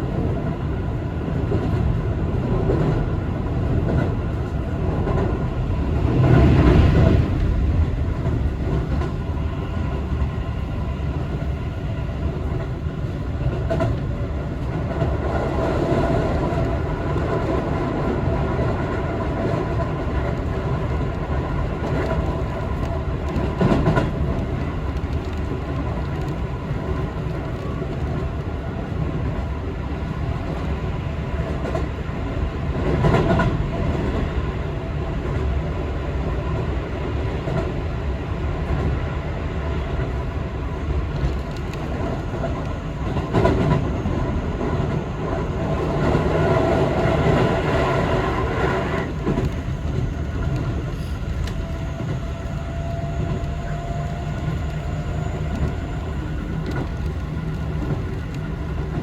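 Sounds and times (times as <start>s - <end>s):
train wheels rumbling on track: 0.0s - 59.0s.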